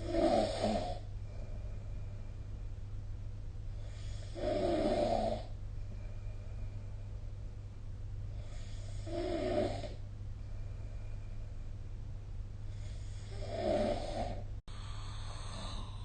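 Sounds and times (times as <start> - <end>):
person snoring: 0.0 - 1.1, 3.8 - 5.6, 8.4 - 10.0, 12.7 - 16.0
steady low hum: 0.0 - 16.0.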